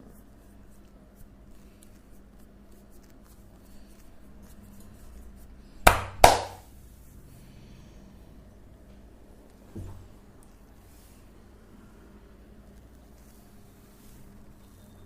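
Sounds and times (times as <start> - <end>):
hands slapping skin: 5.9 - 6.7.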